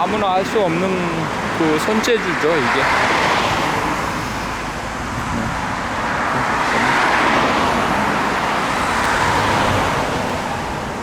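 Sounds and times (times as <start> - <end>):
cars passing by: 0.0 - 11.0.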